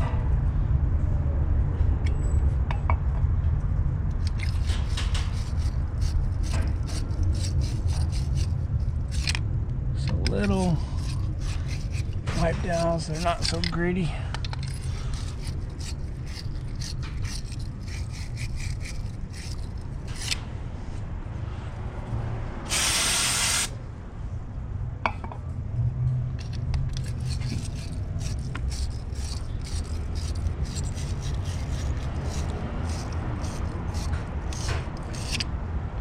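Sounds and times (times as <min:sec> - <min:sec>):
rubbing and scraping engine parts: 0:04.1 - 0:23.7, 0:26.3 - 0:35.6
loud hiss: 0:22.7 - 0:23.8.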